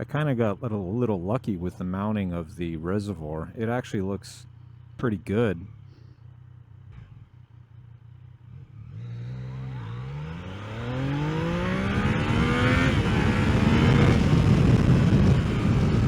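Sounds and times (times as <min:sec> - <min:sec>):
motorcycle engine accelerating: 0:05.6 - 0:16.0
wind noise: 0:11.5 - 0:16.0.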